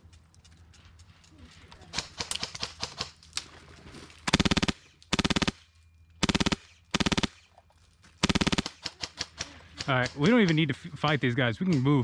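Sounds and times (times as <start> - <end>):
airsoft gun firing bursts: 4.3 - 5.6, 6.2 - 7.4, 8.2 - 10.3.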